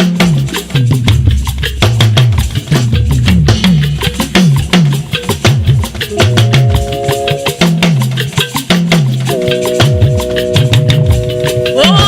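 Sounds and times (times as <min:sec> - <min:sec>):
drum and shaker percussion: 0:00.0 - 0:12.0
upbeat band music: 0:06.0 - 0:08.4, 0:09.2 - 0:12.0.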